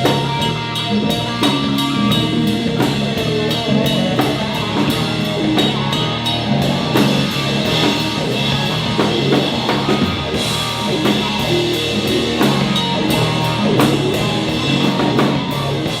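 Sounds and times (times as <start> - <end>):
drum kit beat: 0.0 - 16.0
guitar: 0.0 - 16.0
rock music: 0.0 - 16.0.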